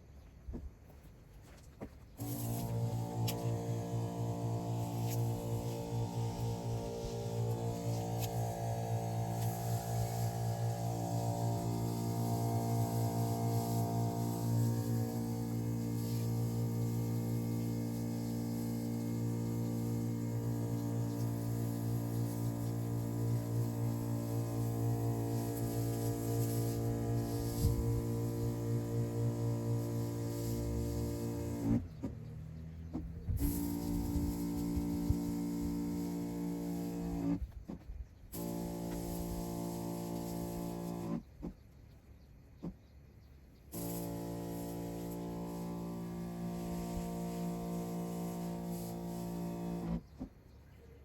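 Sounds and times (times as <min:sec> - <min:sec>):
steady low hum: 0:02.1 - 0:37.6
hiss of spray: 0:02.2 - 0:31.8, 0:33.4 - 0:37.4, 0:38.3 - 0:41.2, 0:43.7 - 0:50.0.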